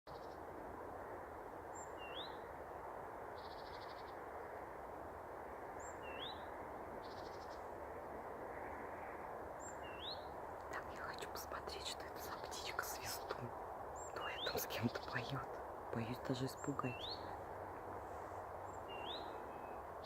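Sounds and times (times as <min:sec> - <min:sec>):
background hiss: 0:00.1 - 0:20.0.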